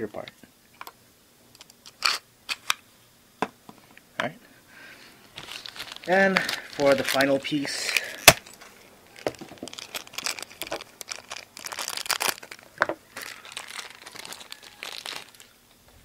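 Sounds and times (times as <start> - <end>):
plastic packaging crinkling: 5.0 - 15.6.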